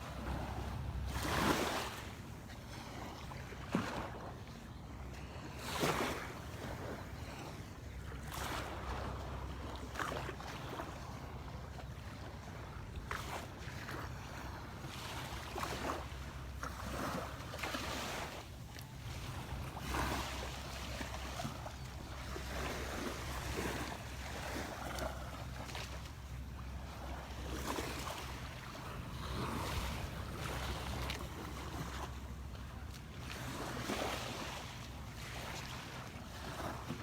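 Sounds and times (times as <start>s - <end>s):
wind rumbling on microphone: 26.8s - 32.4s.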